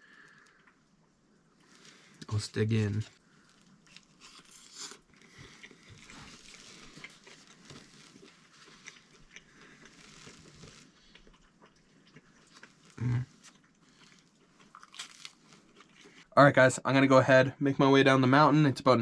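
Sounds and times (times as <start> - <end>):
person chewing and crunching: 3.4 - 16.3.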